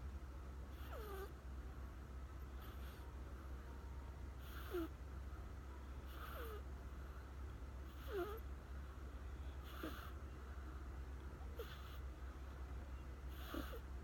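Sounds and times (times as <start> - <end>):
kitten snoring with squeaky whistle: 0.7 - 1.4, 2.5 - 3.1, 4.4 - 5.0, 6.0 - 6.7, 7.8 - 8.5, 9.6 - 10.2, 11.5 - 12.1, 13.2 - 14.0.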